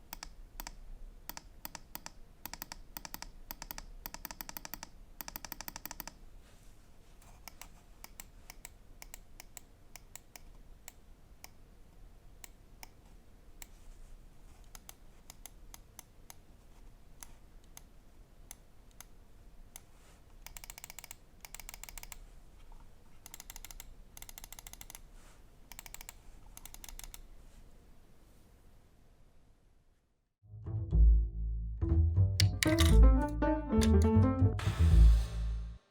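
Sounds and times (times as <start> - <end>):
mouse buttons clicking: 0.0 - 6.2, 7.3 - 11.6, 32.4 - 34.1.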